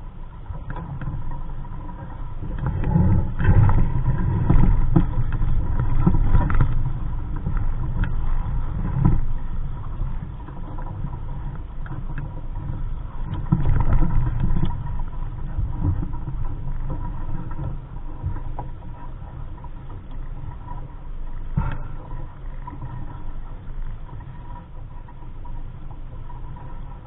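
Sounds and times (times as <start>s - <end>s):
wind buffeting microphone: 0.0s - 27.0s.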